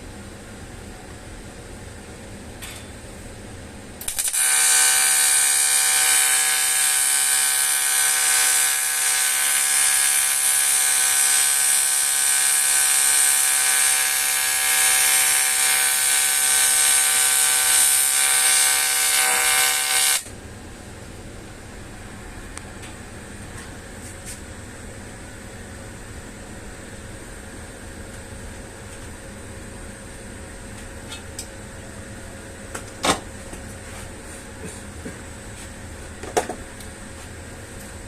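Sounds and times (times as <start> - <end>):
welding arc buzzing and hissing: 4.0 - 20.3.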